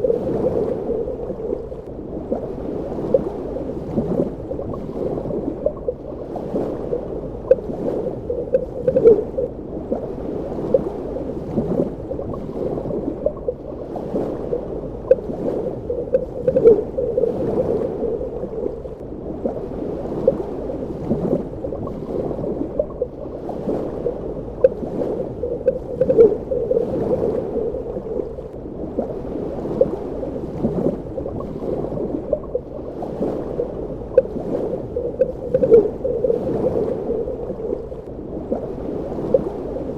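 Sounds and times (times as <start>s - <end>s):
underwater bubbling and gurgling: 0.0s - 39.9s
bubble blips: 8.3s - 9.5s, 35.0s - 37.7s.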